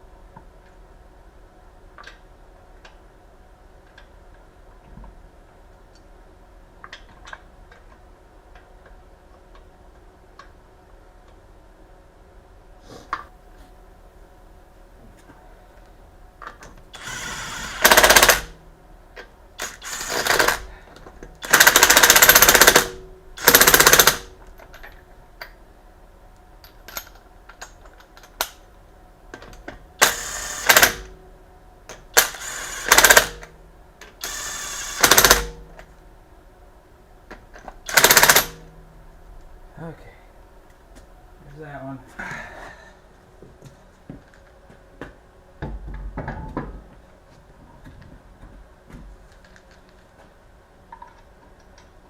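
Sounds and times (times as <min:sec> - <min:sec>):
impact wrench hammering: 0:17.0 - 0:18.6, 0:21.4 - 0:24.3, 0:30.0 - 0:31.1, 0:32.2 - 0:33.5, 0:34.2 - 0:35.7, 0:37.9 - 0:38.6.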